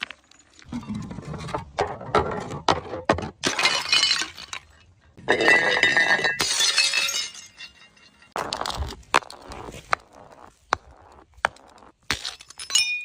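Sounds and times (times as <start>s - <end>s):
glass bottles breaking: 3.4s - 8.8s, 12.1s - 13.0s.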